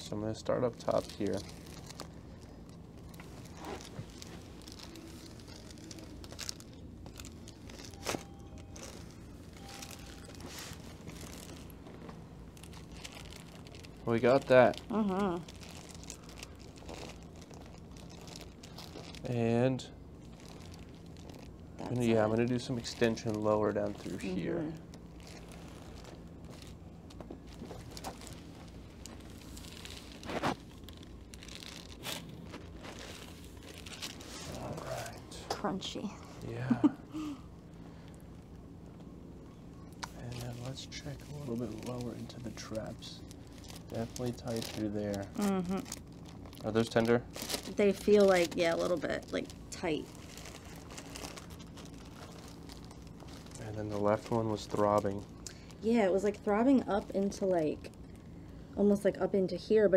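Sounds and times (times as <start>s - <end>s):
faint rustling and crinkling: 0.0s - 59.1s.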